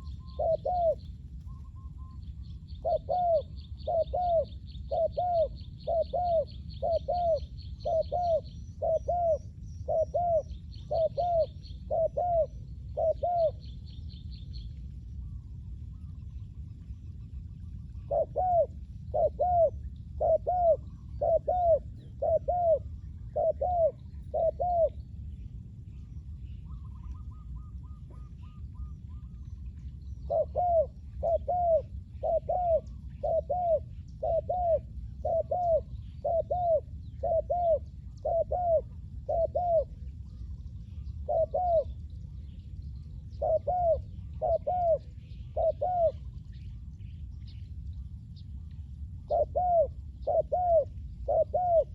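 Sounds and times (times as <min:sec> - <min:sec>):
dove cooing: 0:00.0 - 0:13.6, 0:17.9 - 0:25.0, 0:30.2 - 0:40.4, 0:41.0 - 0:42.0, 0:43.3 - 0:46.3, 0:49.3 - 0:51.9
bird trill: 0:00.0 - 0:14.6
low background rumble: 0:00.0 - 0:51.9.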